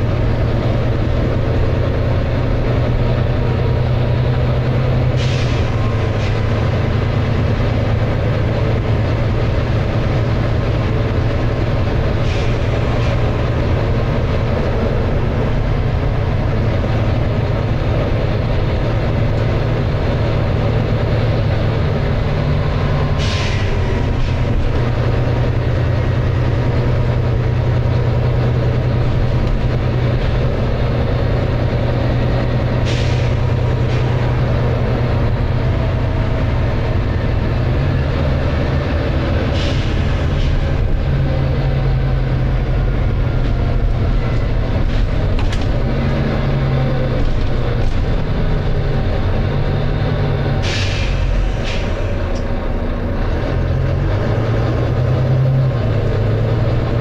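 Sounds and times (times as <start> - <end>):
bus diesel engine running: 0.0 - 57.0
air brake hisses: 5.1 - 6.6, 12.2 - 13.2, 23.1 - 24.4, 32.8 - 34.0, 39.4 - 40.6, 50.6 - 52.2.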